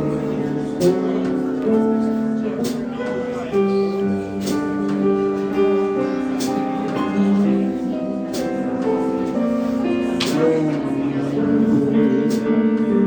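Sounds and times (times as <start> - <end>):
jazz guitar: 0.0 - 13.0
piano: 0.0 - 13.0.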